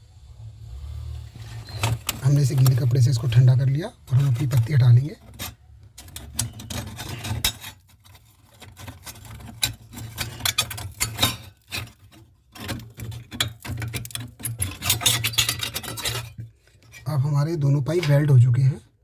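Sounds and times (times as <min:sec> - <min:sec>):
metal sheet rubbing and scraping: 0:01.1 - 0:17.2.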